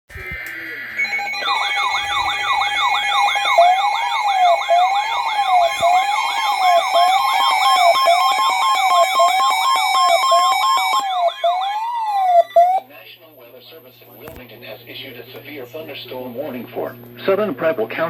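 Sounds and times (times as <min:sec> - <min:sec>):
steady high tones: 0:00.1 - 0:12.8
wailing siren: 0:00.2 - 0:12.8
fast yelping siren: 0:00.8 - 0:12.8.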